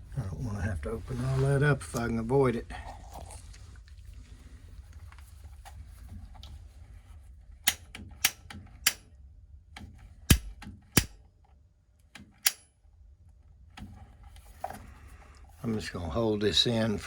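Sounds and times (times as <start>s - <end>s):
spark igniter clicking: 10.3s - 11.2s.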